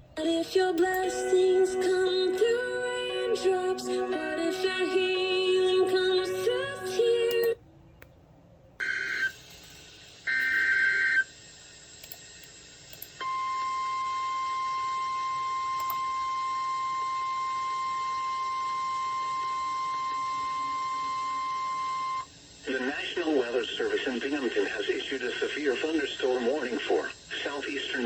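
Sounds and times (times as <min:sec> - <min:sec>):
steady high alert tone: 0:00.2 - 0:07.6.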